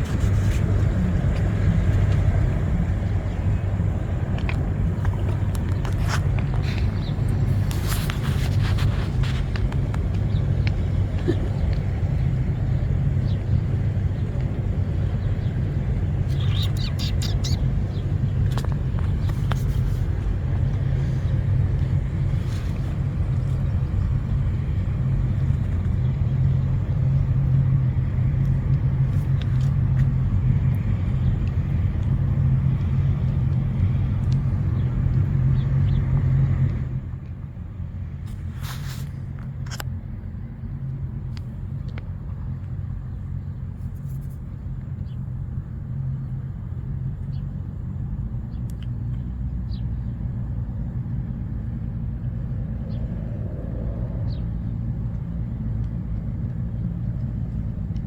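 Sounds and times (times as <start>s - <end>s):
low outdoor rumble: 0.0s - 58.0s
faint clicks: 34.2s - 34.5s, 48.6s - 49.2s.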